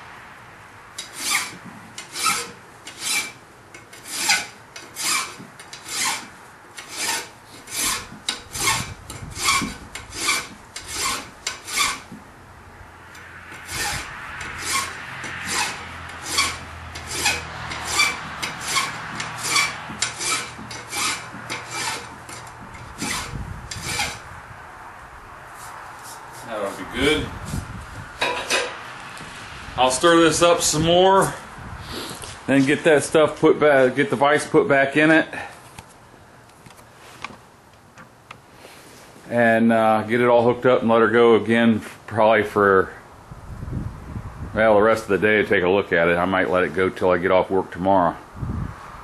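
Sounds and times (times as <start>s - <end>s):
hand file rasping on metal: 1.0s - 12.2s, 13.5s - 24.2s.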